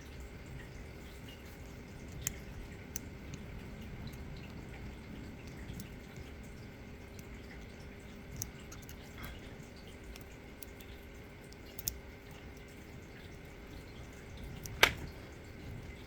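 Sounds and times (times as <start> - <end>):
lock pick clicking: 11.5 - 12.0
loud sharp lock click: 14.6 - 15.1.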